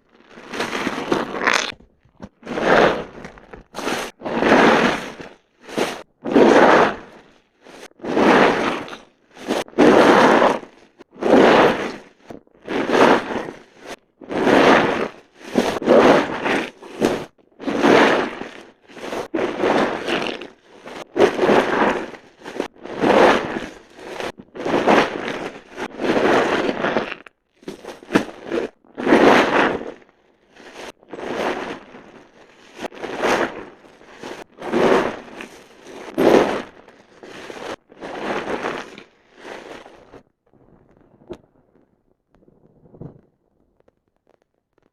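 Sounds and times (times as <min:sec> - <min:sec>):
wet soap squishing: 0:00.2 - 0:02.4.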